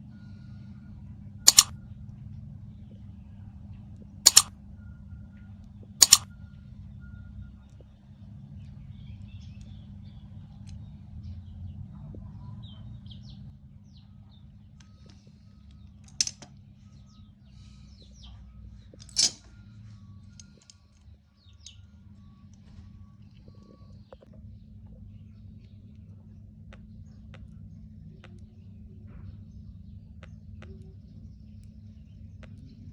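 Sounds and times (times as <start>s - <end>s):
low steady hum: 0.0s - 32.9s
sharp clicks: 1.5s - 1.7s, 4.3s - 4.5s, 6.0s - 6.3s
faint bird chirps: 16.8s - 32.9s.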